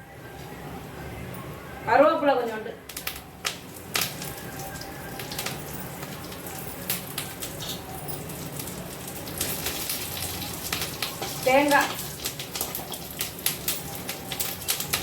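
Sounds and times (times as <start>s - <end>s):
spices frying in oil: 2.9s - 15.0s
crackles and pops: 8.6s - 15.0s.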